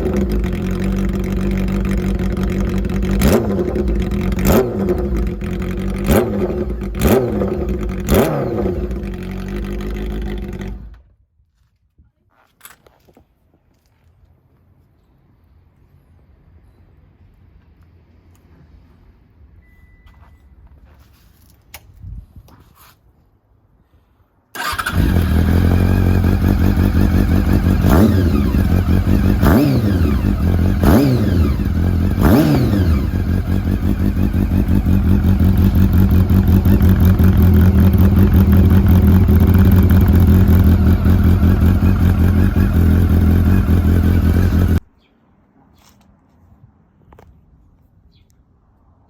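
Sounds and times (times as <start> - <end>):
motorcycle engine idling and revving: 0.0 - 11.2, 24.6 - 44.9.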